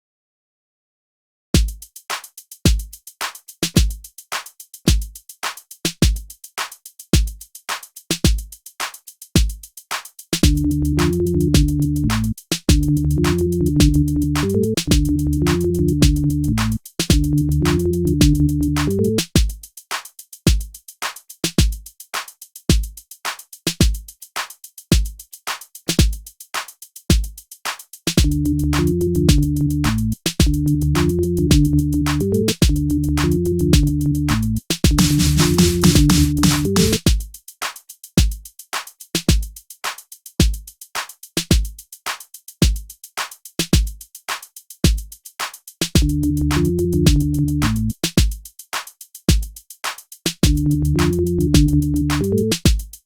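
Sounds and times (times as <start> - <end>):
drum machine beat: 1.6 - 53.0
low synth bass chord: 12.8 - 16.6, 28.2 - 29.9, 30.5 - 34.3, 46.0 - 47.6, 50.6 - 52.4.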